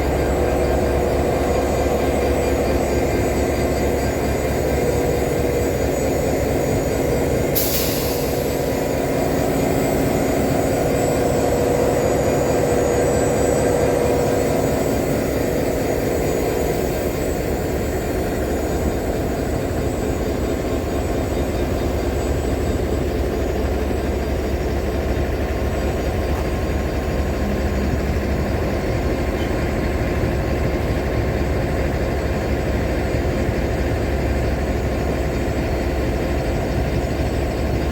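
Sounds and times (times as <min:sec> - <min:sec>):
locomotive engine idling: 0:00.0 - 0:37.9
air hiss: 0:07.5 - 0:10.4.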